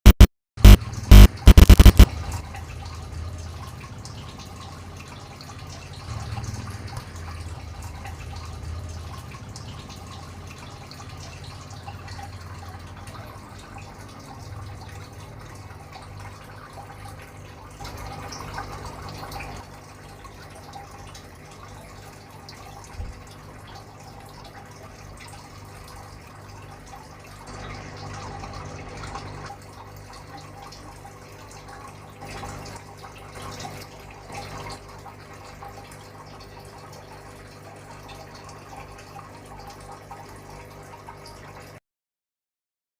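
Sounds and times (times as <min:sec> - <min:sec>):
steady low hum: 0:00.1 - 0:02.1
water trickling and dripping: 0:02.0 - 0:41.8.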